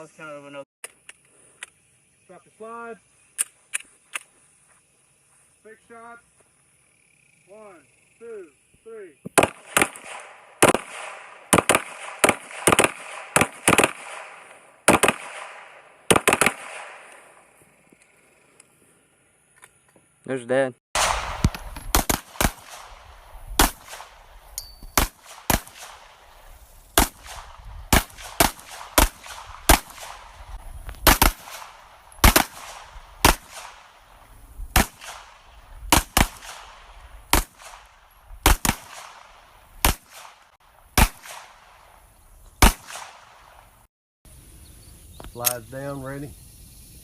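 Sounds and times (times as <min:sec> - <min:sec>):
handgun shots with echo: 0:09.3 - 0:17.4, 0:21.0 - 0:23.0, 0:42.6 - 0:43.5.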